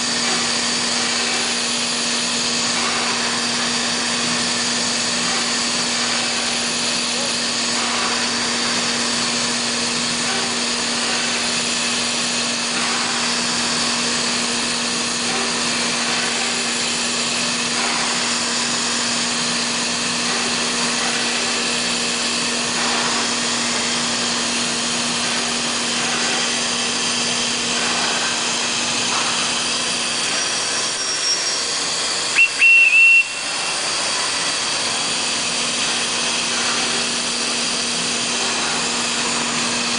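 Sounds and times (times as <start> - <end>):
wood machining centre whirring: 0.0 - 39.9
high whistle: 31.0 - 31.6, 32.3 - 33.5.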